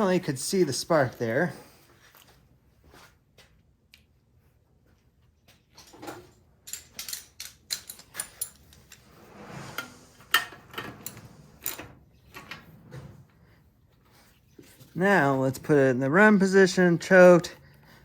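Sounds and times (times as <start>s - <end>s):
hand tools and metal parts clicking: 5.6s - 9.3s, 10.3s - 12.6s.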